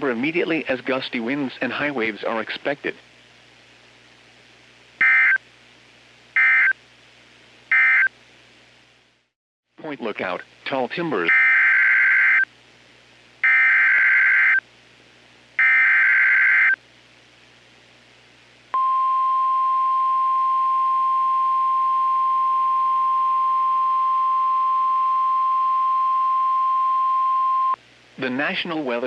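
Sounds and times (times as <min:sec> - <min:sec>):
screeching digital data bursts: 0:15.6 - 0:16.8.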